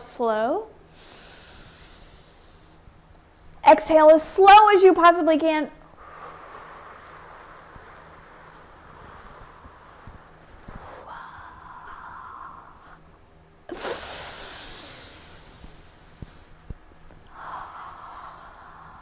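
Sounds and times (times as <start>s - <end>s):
person breathing deeply: 0.9s - 2.8s, 6.0s - 13.0s, 13.7s - 16.7s, 17.3s - 19.0s.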